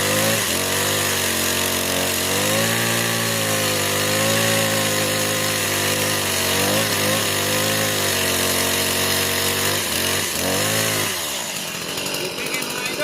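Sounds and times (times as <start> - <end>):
chainsaw engine at high revs: 0.0 - 13.0.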